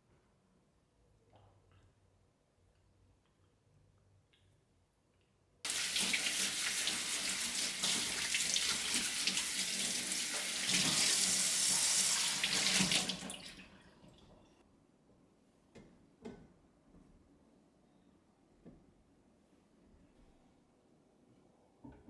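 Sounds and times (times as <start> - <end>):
tap water running into sink: 5.7 - 13.8.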